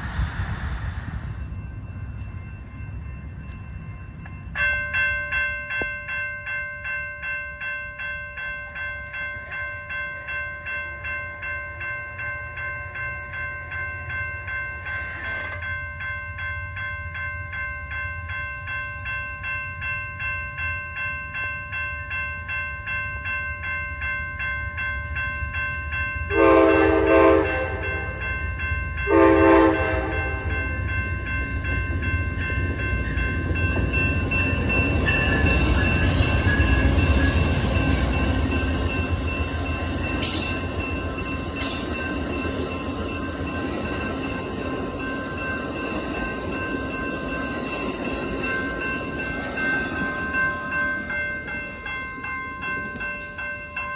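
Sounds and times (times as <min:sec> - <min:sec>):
train rumble: 0:00.0 - 0:05.0, 0:24.7 - 0:53.9
crossing warning bell ringing: 0:00.8 - 0:53.9
locomotive horn blasts: 0:26.3 - 0:28.2, 0:29.1 - 0:30.6.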